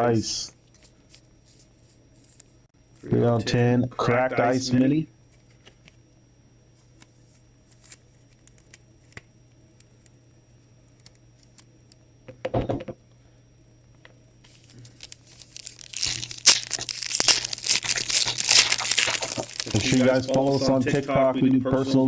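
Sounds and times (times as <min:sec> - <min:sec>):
wrapper crinkling and tearing: 0:14.5 - 0:20.7.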